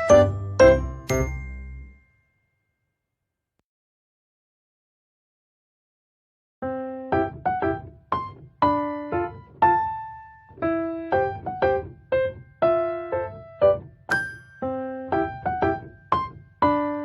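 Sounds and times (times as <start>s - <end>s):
slow keyboard melody: 0.0s - 2.0s.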